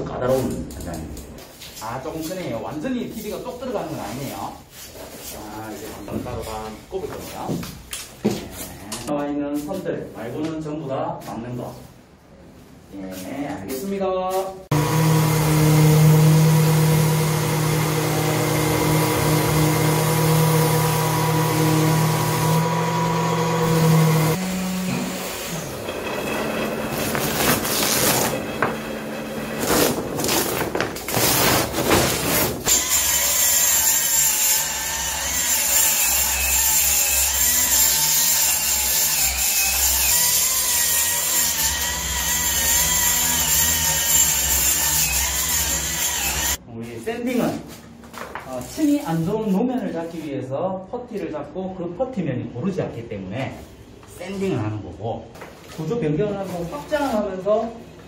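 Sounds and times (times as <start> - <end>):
electric sander motor running: 14.7 - 27.3
power tool with wavering pitch: 14.7 - 29.7, 32.7 - 46.6.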